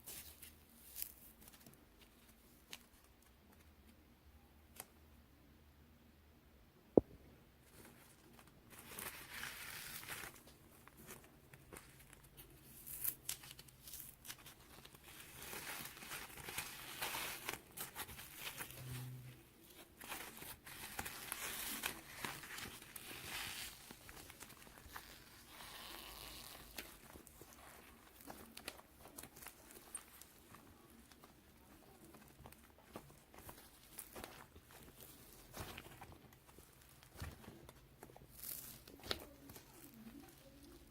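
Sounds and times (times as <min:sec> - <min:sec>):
rustling and crinkling: 0:00.0 - 0:04.0, 0:07.6 - 0:40.9.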